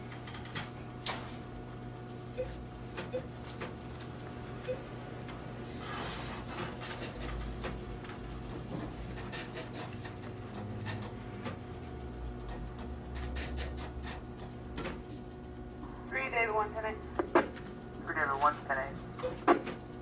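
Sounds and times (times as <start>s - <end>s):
steady electrical hum: 0.0s - 20.0s
office clicks and ticks: 0.1s - 1.3s, 6.5s - 15.5s, 17.1s - 20.0s.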